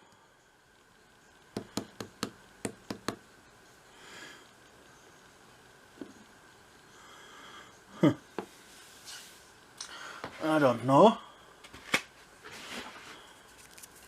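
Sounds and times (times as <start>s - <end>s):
soft rustle: 8.5s - 9.6s, 12.2s - 14.0s.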